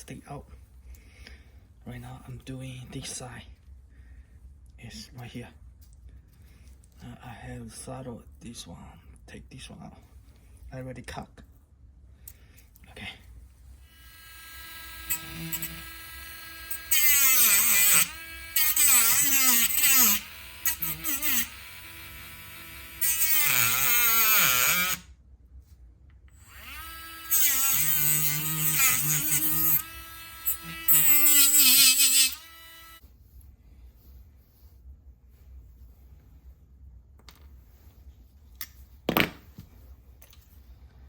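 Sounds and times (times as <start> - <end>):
rotary tool whining while cutting: 13.9 - 25.1, 26.4 - 33.0.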